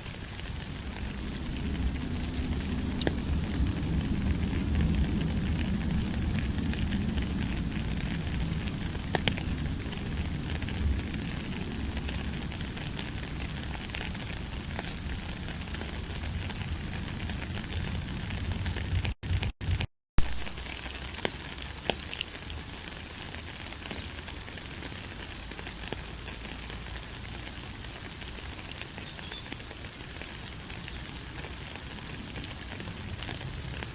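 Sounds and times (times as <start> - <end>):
steady rain falling: 0.0 - 33.9
low rumble: 0.8 - 20.4.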